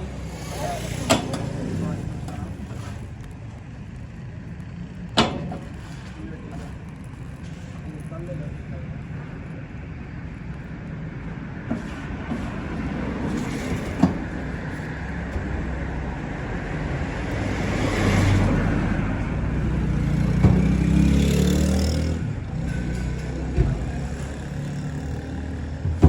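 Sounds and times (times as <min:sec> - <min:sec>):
traffic rumble: 0:00.0 - 0:26.0
sharp knocks: 0:20.2 - 0:22.0, 0:25.6 - 0:26.0.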